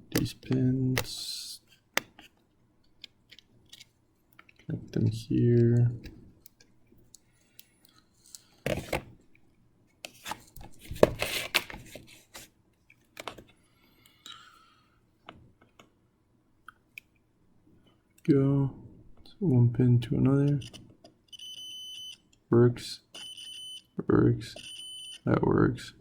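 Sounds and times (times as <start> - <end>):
wires clicking into breadboard: 0.1 - 1.3.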